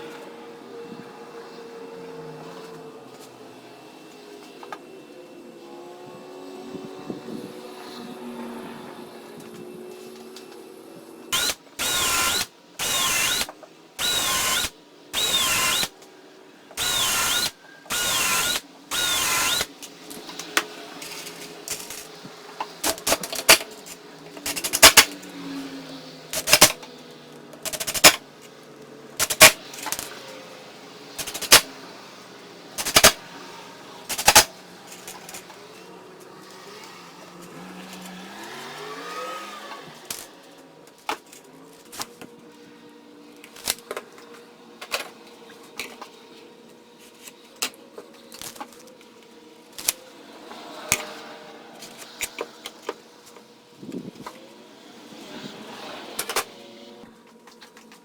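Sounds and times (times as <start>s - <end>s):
power drill driving screws: 11.3s - 16.0s, 16.8s - 19.9s, 21.0s - 22.1s, 22.8s - 25.1s, 26.4s - 26.8s, 27.7s - 28.2s, 29.2s - 30.1s, 31.2s - 31.7s, 32.8s - 33.2s, 34.1s - 34.5s, 37.9s - 40.3s.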